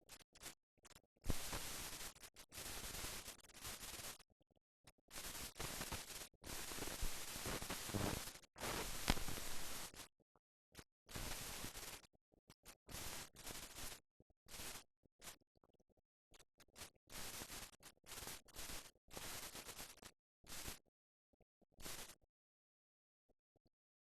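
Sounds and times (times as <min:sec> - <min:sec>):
old film hiss and crackle: 0:00.1 - 0:04.2, 0:05.1 - 0:10.1, 0:11.1 - 0:12.1, 0:12.7 - 0:15.4, 0:16.7 - 0:20.8, 0:21.8 - 0:22.2.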